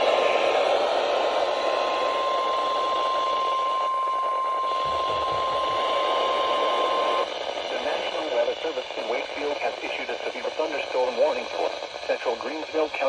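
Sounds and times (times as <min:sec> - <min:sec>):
steady high alarm beep: 0:03.6 - 0:07.3
radio static and hiss: 0:04.8 - 0:13.0.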